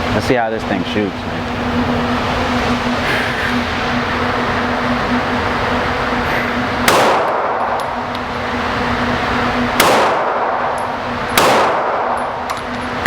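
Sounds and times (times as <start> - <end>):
pistol shots with ringing tail: 6.8 - 7.9, 9.8 - 13.0.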